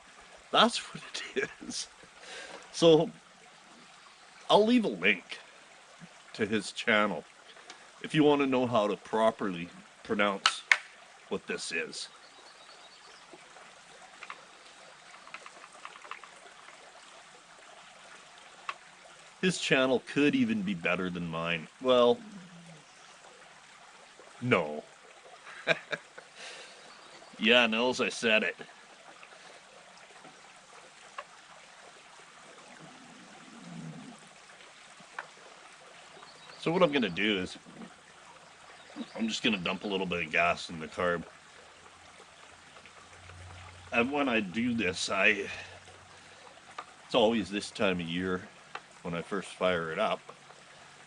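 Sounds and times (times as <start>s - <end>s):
faint background hiss: 0.0s - 51.0s.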